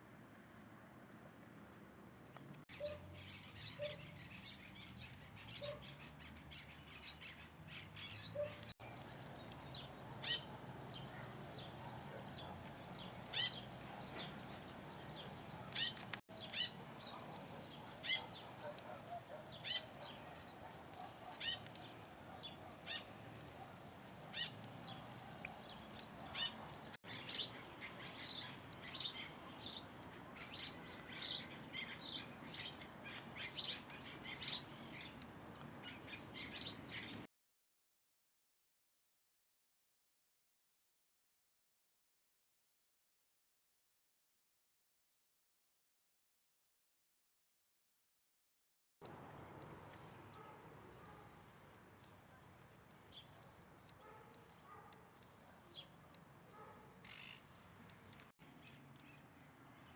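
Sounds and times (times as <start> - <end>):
small birds chirping: 2.3 - 37.3, 49.1 - 59.9.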